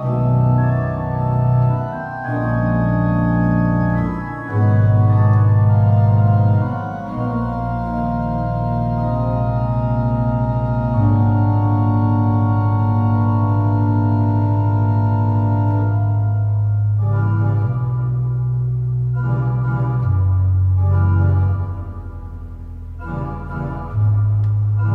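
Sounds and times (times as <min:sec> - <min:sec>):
church organ sustained chords: 0:00.0 - 0:24.9.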